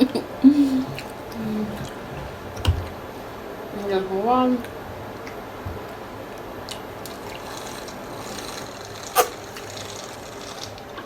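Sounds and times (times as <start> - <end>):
person drinking water: 0.5 - 2.3, 6.6 - 11.0.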